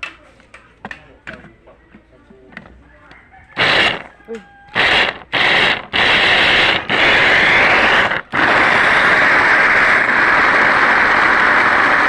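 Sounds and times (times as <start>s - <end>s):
electric grinder whirring: 3.6s - 4.1s, 4.7s - 12.0s.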